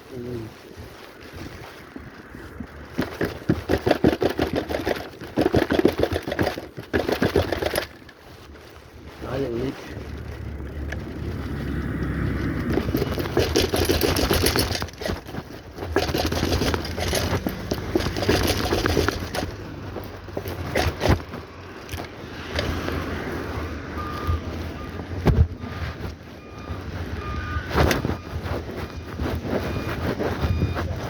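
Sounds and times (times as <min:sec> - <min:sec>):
tyres rolling over rough road: 0:00.0 - 0:31.0
bike rattles and knocks: 0:00.2 - 0:23.3, 0:24.2 - 0:31.0
wind on microphone: 0:22.2 - 0:31.0.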